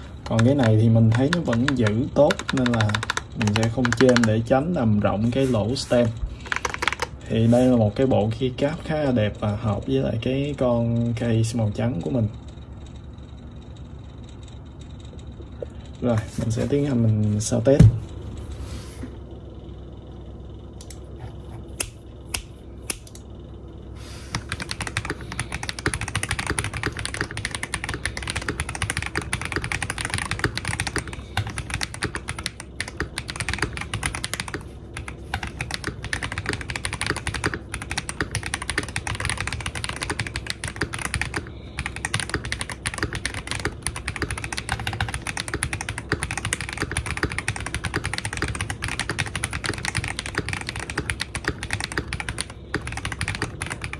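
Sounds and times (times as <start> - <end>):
mechanical keyboard typing: 0.0 - 4.6, 6.4 - 7.2, 24.3 - 53.9.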